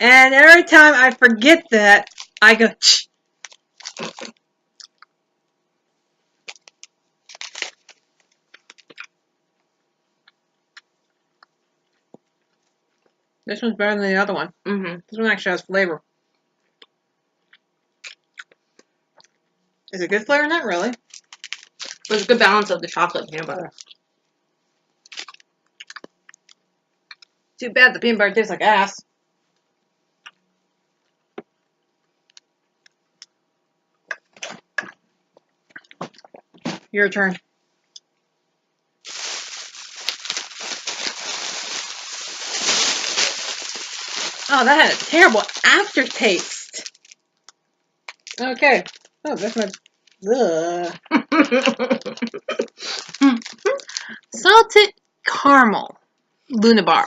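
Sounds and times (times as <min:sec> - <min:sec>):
crunching and chewing protein bar: 0:02.0 - 0:02.4, 0:03.4 - 0:05.1, 0:06.5 - 0:09.2, 0:21.0 - 0:22.3, 0:25.1 - 0:27.3, 0:39.1 - 0:50.2, 0:52.6 - 0:54.1.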